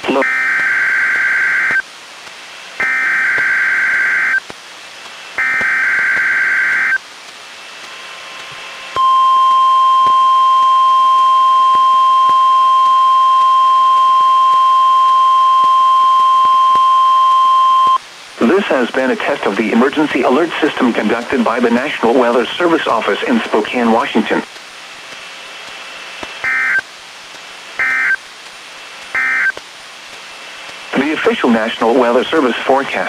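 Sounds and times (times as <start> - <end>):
steady weather radio alert tone: 0.0 - 1.8, 2.8 - 4.4, 5.4 - 7.0, 9.0 - 24.5, 25.8 - 26.8, 27.8 - 28.2, 28.8 - 29.6, 30.5 - 33.0.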